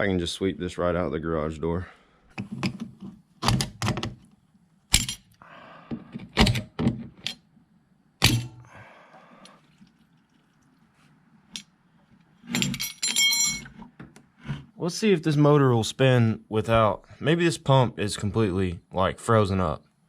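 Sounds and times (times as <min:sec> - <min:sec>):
ringing metallic clinks: 0:12.6 - 0:13.7.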